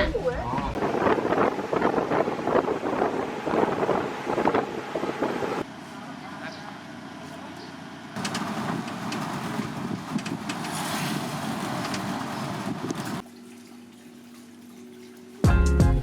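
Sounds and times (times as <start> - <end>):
water rushing and splashing: 0.7 - 5.6, 8.2 - 15.5
music: 15.4 - 16.0.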